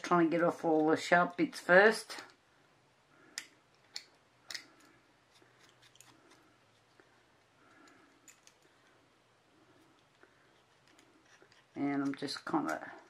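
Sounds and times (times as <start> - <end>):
deburring tool scraping resin: 10.0 - 13.0.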